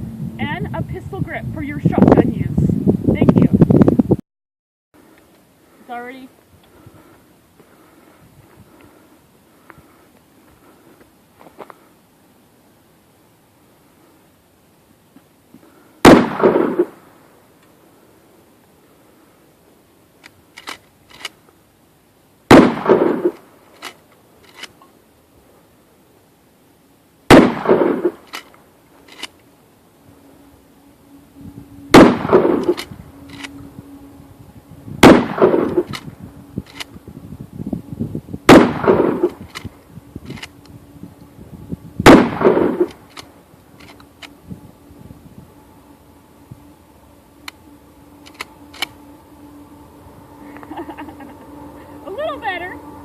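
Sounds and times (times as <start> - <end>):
shotgun shot echoing: 16.0 - 17.0, 22.5 - 23.4, 27.3 - 28.2, 32.0 - 32.8, 35.0 - 35.9, 38.5 - 39.3, 42.1 - 42.9
sharp clicks: 48.2 - 49.0.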